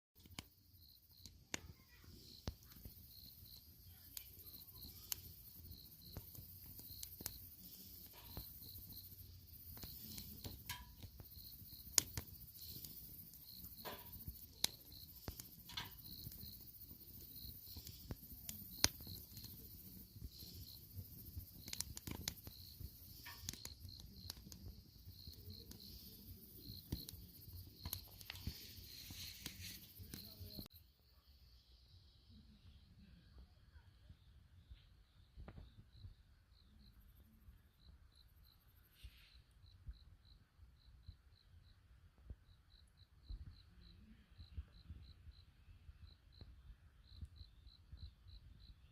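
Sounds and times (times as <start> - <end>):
campfire crackling and popping: 0.2 - 30.7
crickets chirping: 0.2 - 48.9
high-pitched insect trill: 0.5 - 31.9.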